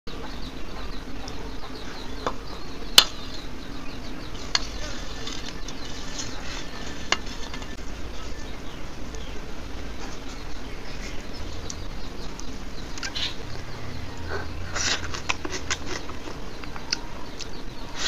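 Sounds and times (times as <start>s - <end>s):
food being mixed on a plate: 14.6s - 17.5s.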